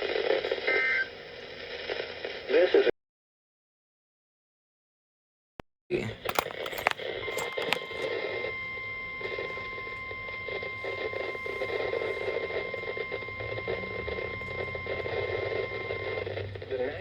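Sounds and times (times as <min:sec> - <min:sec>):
radio hiss and static crackle: 0:00.0 - 0:02.9, 0:10.8 - 0:17.0
steady high warning beep: 0:07.2 - 0:16.2.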